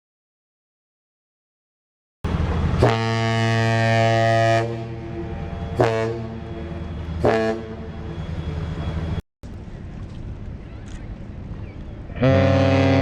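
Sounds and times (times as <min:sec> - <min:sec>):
ship's whistle blasts: 0:02.8 - 0:09.2, 0:12.2 - 0:13.0.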